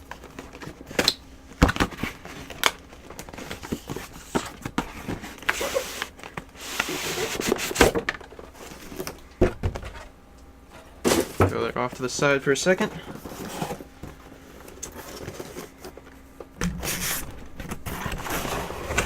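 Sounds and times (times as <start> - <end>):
cardboard rustling and sliding: 3.3 - 9.1, 13.0 - 19.0
sharp knock: 16.6 - 17.6.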